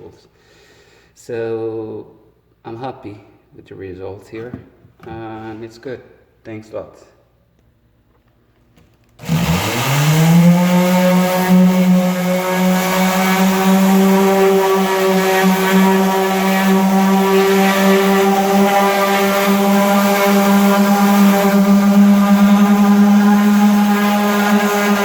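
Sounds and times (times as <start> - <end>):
orbital sander motor: 9.2 - 25.0.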